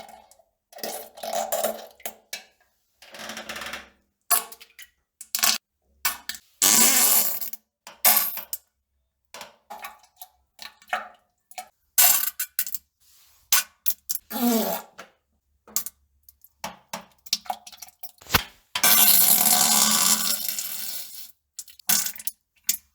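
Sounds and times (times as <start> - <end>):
sharp click: 18.2 - 18.5.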